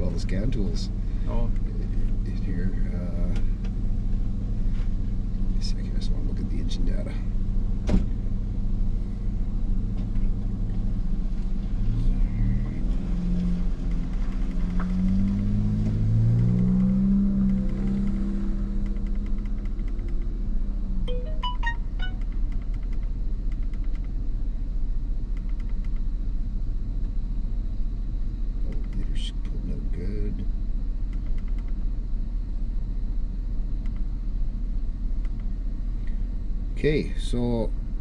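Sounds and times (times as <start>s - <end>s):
car engine idling: 0.0s - 38.0s
pitched sound gliding: 21.1s - 22.2s
short high tones: 21.1s - 22.2s.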